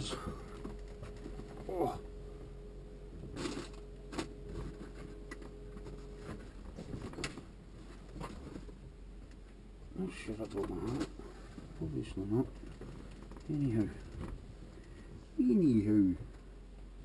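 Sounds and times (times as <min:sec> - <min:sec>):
faint steady hum: 0:00.0 - 0:17.0
rustling: 0:03.2 - 0:09.6.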